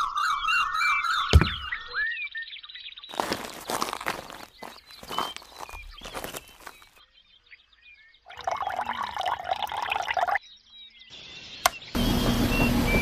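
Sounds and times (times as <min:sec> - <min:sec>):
liquid pouring: 0:08.3 - 0:10.4.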